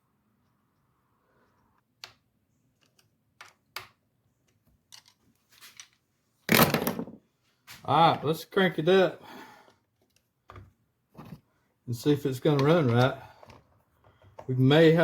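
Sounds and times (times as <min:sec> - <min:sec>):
light clicks of handled parts: 0:01.4 - 0:06.0.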